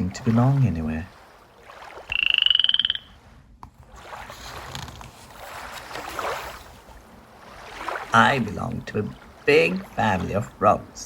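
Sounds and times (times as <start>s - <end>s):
frog croaking trill: 2.1s - 3.2s.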